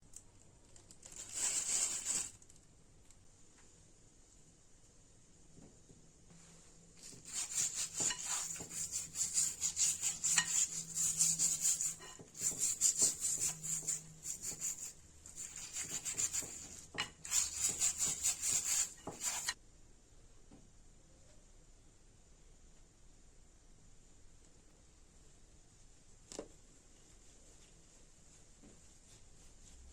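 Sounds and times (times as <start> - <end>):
taro scraped by hand: 7.0 - 19.6.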